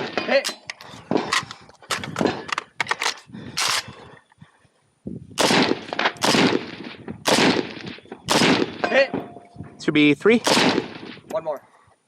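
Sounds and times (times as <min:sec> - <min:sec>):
gunshots: 0:00.0 - 0:00.4, 0:05.4 - 0:09.2, 0:10.4 - 0:11.2.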